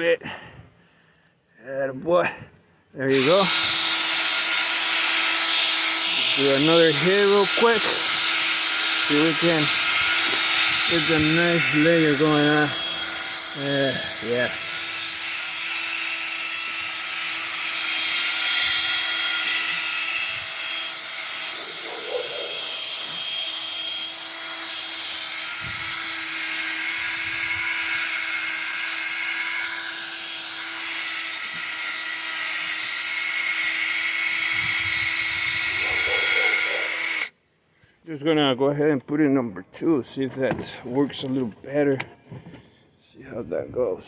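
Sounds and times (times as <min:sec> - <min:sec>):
power drill motor whine: 0:03.1 - 0:37.3.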